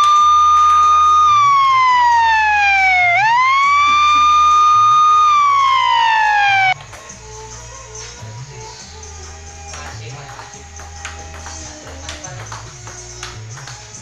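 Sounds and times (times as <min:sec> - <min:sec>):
loud siren wail: 0:00.0 - 0:06.8
faint background music with beat: 0:00.2 - 0:14.0.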